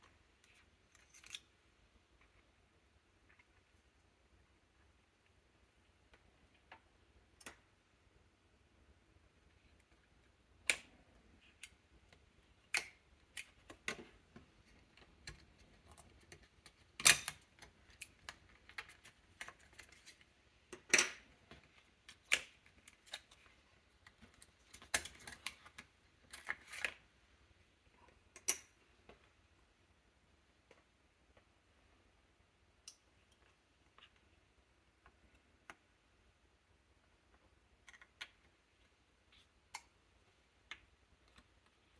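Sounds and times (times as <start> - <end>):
laptop parts clicking and tapping: 9.8 - 27.0, 37.3 - 39.0.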